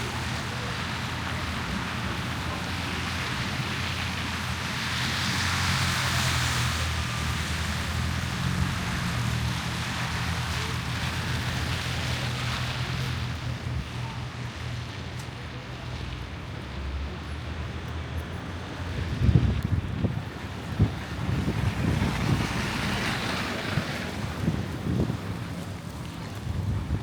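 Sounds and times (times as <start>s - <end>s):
wind gusts buffeting microphone: 18.8s - 27.0s
wind rushing across microphone: 18.8s - 27.0s.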